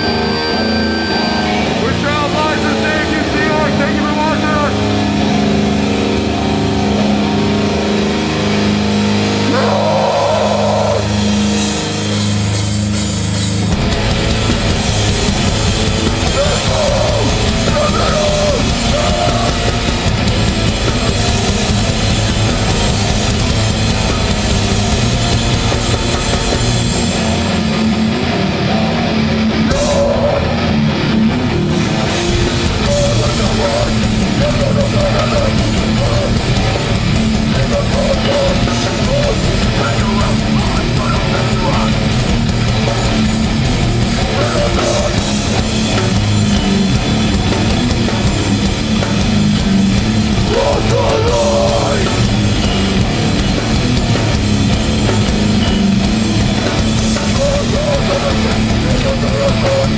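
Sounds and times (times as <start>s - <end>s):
drum kit: 0.0s - 59.9s
loud distorted guitars: 0.0s - 59.9s.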